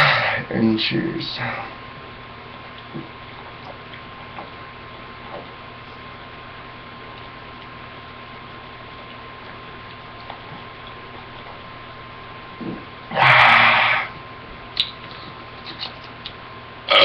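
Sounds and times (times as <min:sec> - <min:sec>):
high-pitched electrical whine: 0:11.1 - 0:14.8.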